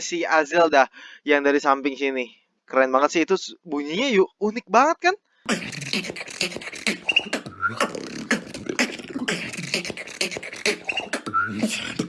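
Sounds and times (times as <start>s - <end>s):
beatboxing: 5.5s - 12.0s
whistled notes: 6.3s - 8.6s, 9.4s - 12.0s.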